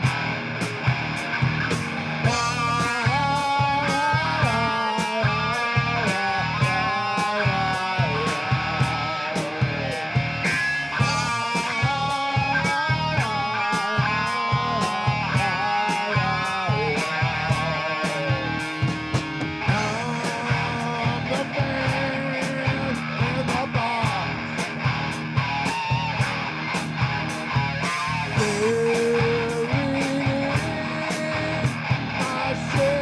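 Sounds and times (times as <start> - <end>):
drum beat: 0.0 - 33.0
electric guitar bending notes: 0.0 - 33.0.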